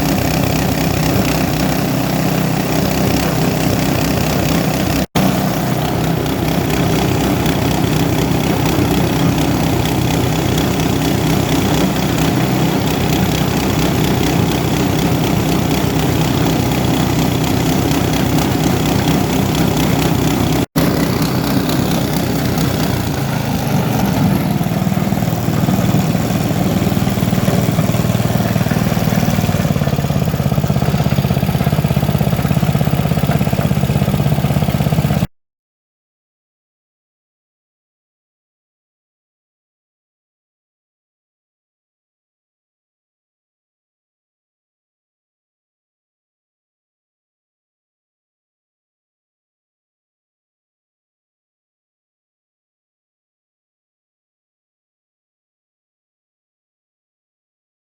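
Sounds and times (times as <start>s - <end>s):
foam shredding machine running: 0.0s - 35.3s.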